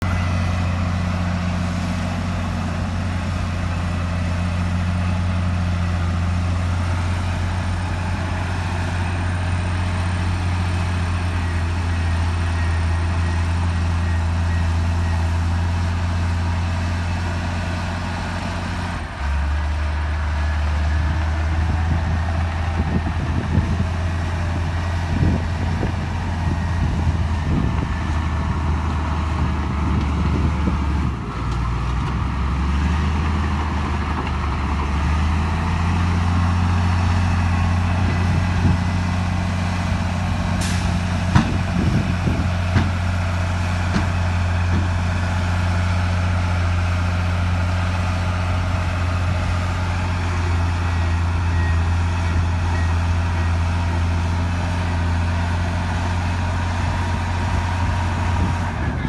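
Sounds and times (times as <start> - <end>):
diesel earthmoving machinery running: 0.0 - 59.0
knocks and clanks: 41.3 - 42.0, 42.7 - 43.0, 43.9 - 44.9.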